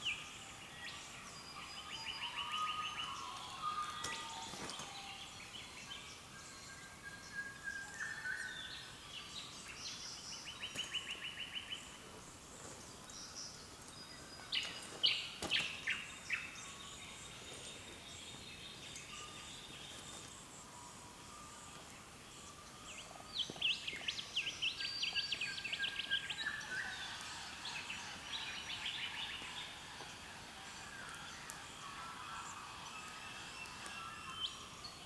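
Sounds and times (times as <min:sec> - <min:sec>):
birds chirping and whistling: 0:01.2 - 0:11.9.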